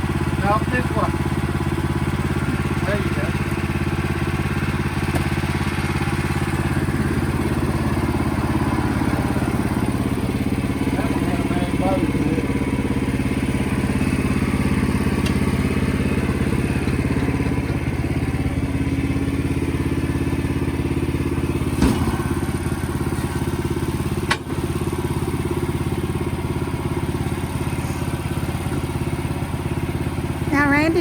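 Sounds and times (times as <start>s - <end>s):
engine running steadily: 0.0s - 31.0s
thud: 21.8s - 22.2s.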